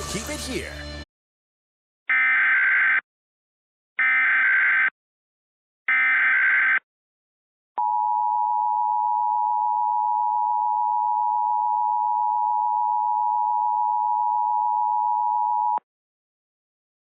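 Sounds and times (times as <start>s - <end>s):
two-tone alarm signal: 2.1s - 3.0s, 4.0s - 4.9s, 5.9s - 6.8s.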